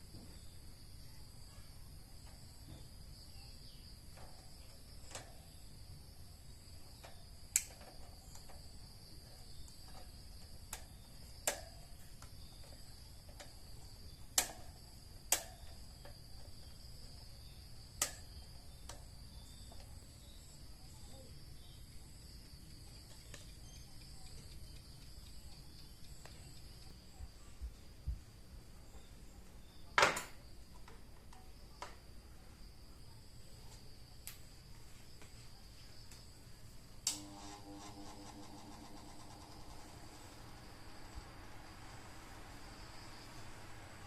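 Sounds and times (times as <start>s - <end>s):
insects chirring: 0.0s - 44.0s
sharp clicks: 7.0s - 8.6s.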